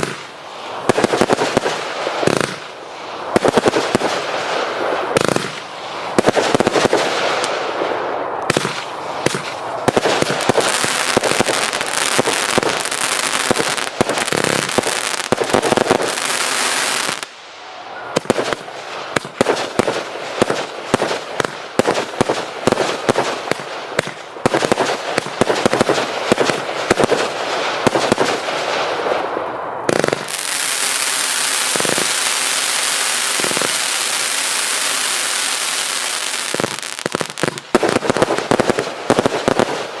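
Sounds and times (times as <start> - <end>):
firework cake shots and bursts: 0.0 - 4.3, 8.4 - 17.2
continuous hiss: 0.0 - 40.0
firework bangs: 0.0 - 40.0.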